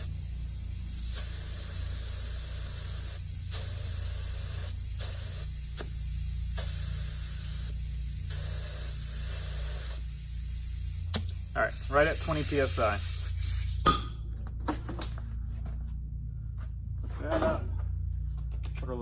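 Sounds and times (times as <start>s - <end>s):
compressed air hissing from tyre: 0.0s - 14.2s.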